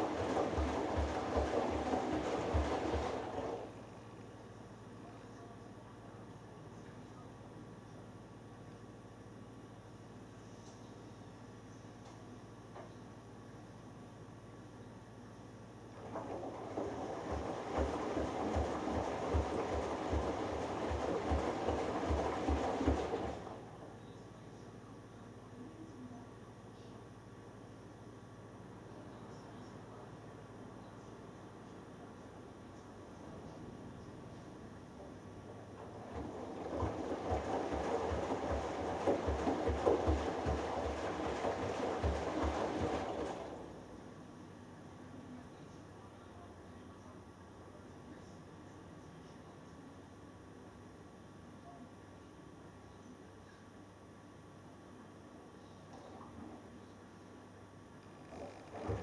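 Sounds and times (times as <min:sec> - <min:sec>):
washing machine drum sloshing: 0:00.0 - 0:03.9, 0:16.0 - 0:23.8, 0:34.8 - 0:43.8, 0:58.3 - 0:59.0.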